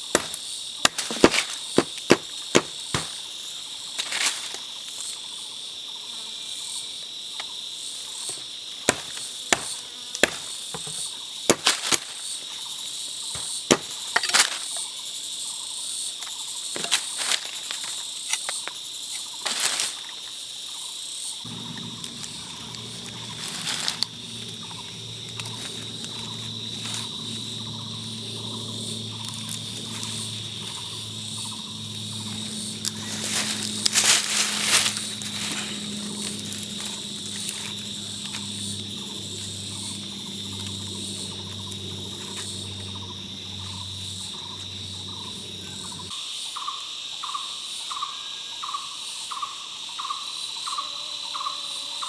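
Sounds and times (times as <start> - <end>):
insects chirring: 0.0 - 52.0
low steady hum: 21.5 - 46.1.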